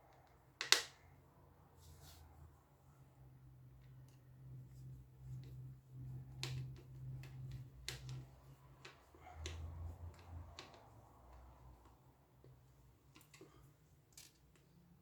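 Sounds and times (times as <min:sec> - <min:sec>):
fan parts clicking: 0:00.1 - 0:01.0, 0:05.4 - 0:14.8.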